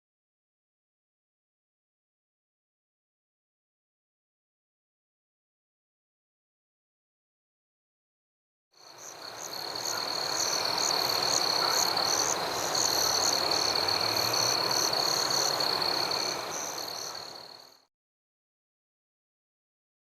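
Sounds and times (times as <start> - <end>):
frogs and insects trilling: 8.8 - 17.9.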